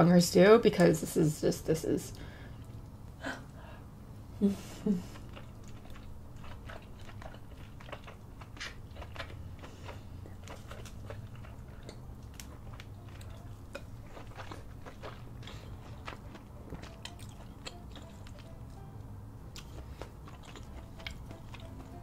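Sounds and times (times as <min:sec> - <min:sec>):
wet chewing and lip smacks: 0:05.1 - 0:18.9, 0:19.5 - 0:22.0.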